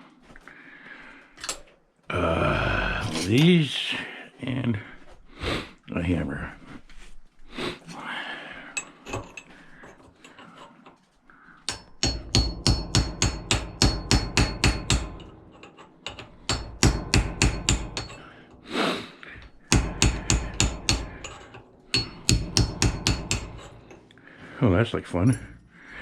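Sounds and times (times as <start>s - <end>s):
hammer striking metal: 11.7s - 18.6s, 19.4s - 24.1s.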